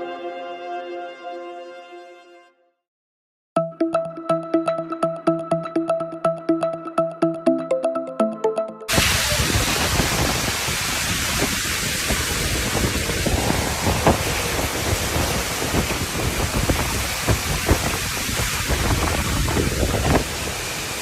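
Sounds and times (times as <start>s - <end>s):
synth music: 0.0s - 2.5s, 3.6s - 10.1s, 12.9s - 17.6s
heavy rain: 8.9s - 21.0s
storm wind: 8.9s - 21.0s
wind buffeting microphone: 9.0s - 20.8s.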